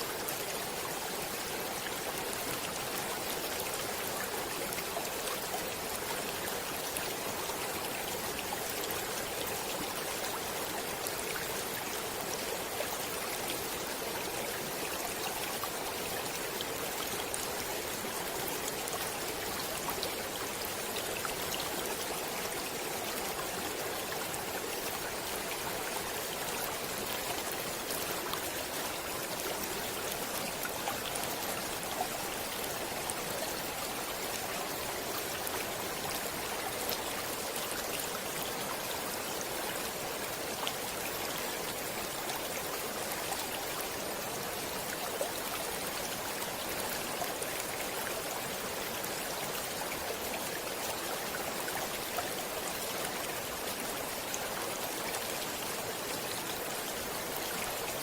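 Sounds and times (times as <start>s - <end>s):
stream water rushing: 0.0s - 58.0s.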